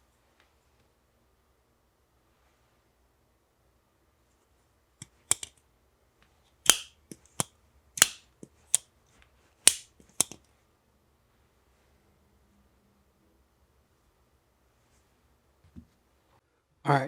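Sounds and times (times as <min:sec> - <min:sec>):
folding knife clicking and snapping: 0:05.0 - 0:05.5, 0:06.7 - 0:08.8, 0:09.7 - 0:10.4.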